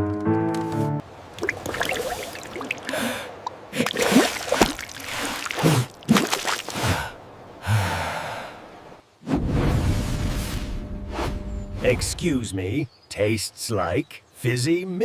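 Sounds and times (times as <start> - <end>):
character gasps and breathy noises: 2.8 - 4.0, 6.8 - 8.7.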